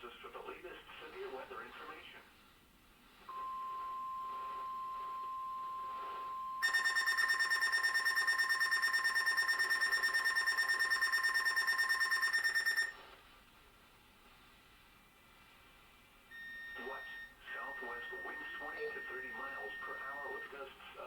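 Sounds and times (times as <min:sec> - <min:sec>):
steady warning alarm tone: 0:03.3 - 0:12.9, 0:16.3 - 0:20.6
electronic alert beeping: 0:06.6 - 0:12.9
faint hiss: 0:13.0 - 0:18.7.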